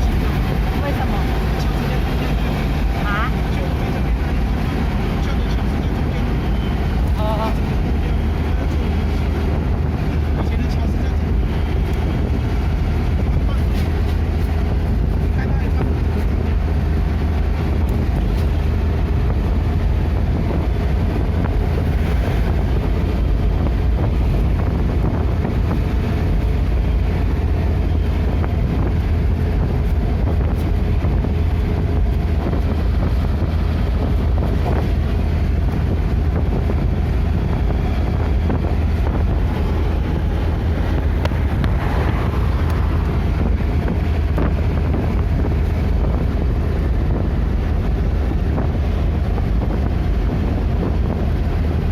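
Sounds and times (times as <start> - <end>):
vehicle rumbling on road: 0.0 - 51.9
wind buffeting microphone: 0.0 - 51.9.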